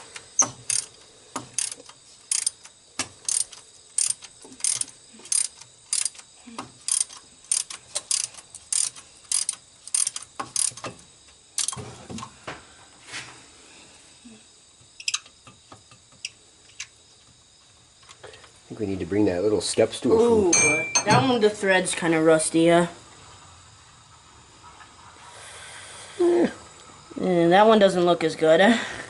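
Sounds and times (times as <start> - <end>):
socket ratchet clicking: 0.4 - 10.9, 11.6 - 11.8, 15.0 - 15.3.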